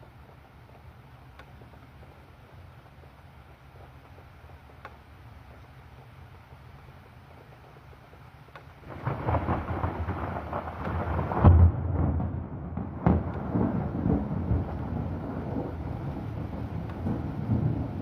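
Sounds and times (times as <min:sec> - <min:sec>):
steady rain: 0:00.0 - 0:18.0
thunder rumbling and cracking: 0:08.8 - 0:18.0.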